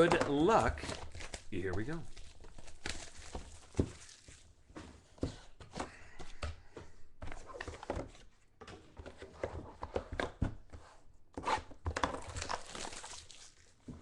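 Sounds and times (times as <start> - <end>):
cardboard and wrapper rustling: 0.0 - 5.7.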